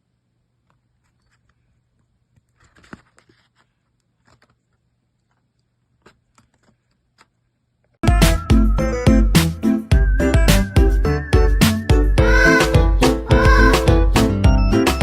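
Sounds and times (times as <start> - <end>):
loud music with a beat: 8.0 - 15.0.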